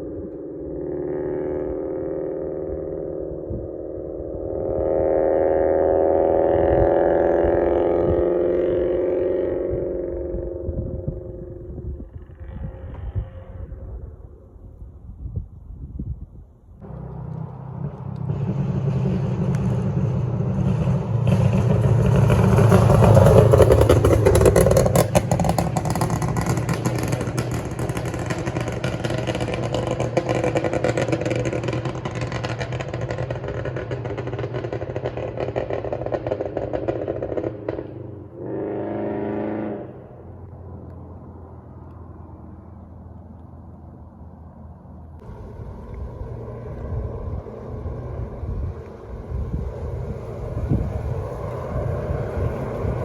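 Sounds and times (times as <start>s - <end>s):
steady droning tone: 0.0s - 20.5s, 38.0s - 53.0s
car engine and exhaust: 0.0s - 53.0s
exhaust pops and crackles: 16.8s - 38.2s.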